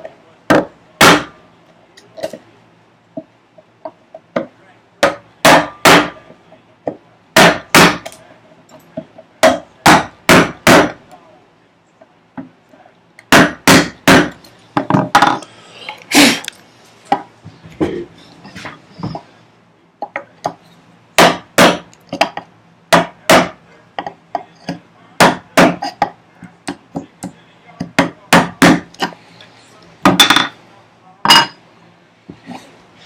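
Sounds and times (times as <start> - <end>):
mallet striking chisel: 0.5 - 1.3, 5.0 - 6.2, 7.4 - 8.1, 9.4 - 11.0, 13.3 - 14.4, 21.2 - 22.4, 23.0 - 23.6, 24.7 - 26.1.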